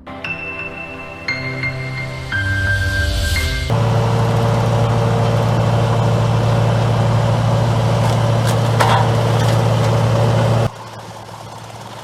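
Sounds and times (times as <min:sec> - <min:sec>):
wood chipper engine running: 0:03.7 - 0:12.0.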